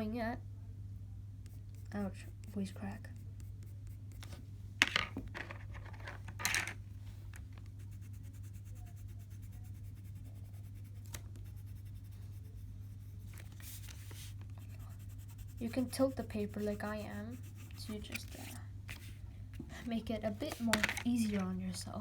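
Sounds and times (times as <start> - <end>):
steady low hum: 0.0 - 5.4, 6.8 - 22.0
colored pencil scratching on paper: 1.4 - 4.4, 7.6 - 21.5.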